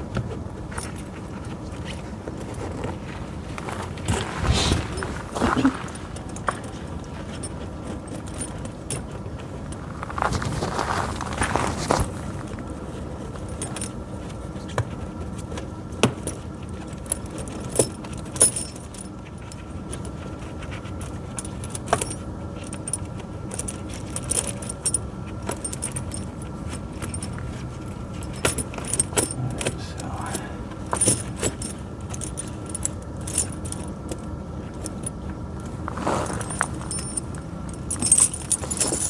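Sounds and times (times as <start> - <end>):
chain links clinking: 17.0 - 20.0, 21.4 - 34.0, 35.9 - 39.0.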